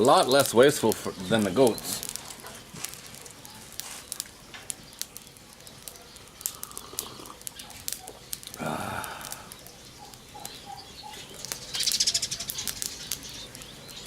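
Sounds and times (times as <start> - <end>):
birds calling faintly: 0.0 - 14.0
sharp clicks and ticks: 0.3 - 10.6
rustling: 1.6 - 5.5.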